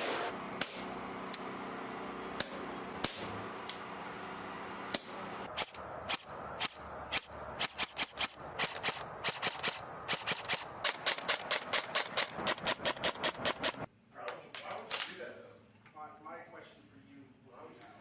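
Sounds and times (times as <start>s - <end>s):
airsoft gun rapid shots: 5.5s - 13.9s.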